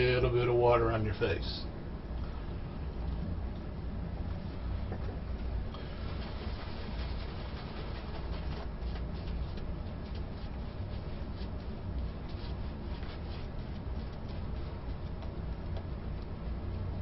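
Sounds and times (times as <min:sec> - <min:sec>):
low hum: 0:00.0 - 0:17.0
shaving brush working lather: 0:05.8 - 0:16.8.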